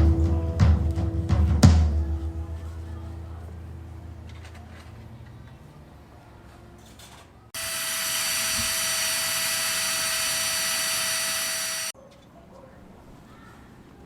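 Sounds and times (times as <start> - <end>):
electric air pump whining: 7.6 - 12.0.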